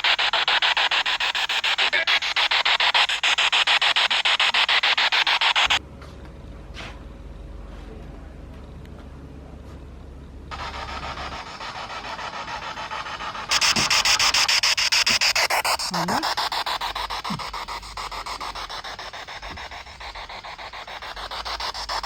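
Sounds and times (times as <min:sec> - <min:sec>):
pulsing radio static: 0:00.0 - 0:05.8, 0:13.5 - 0:22.0.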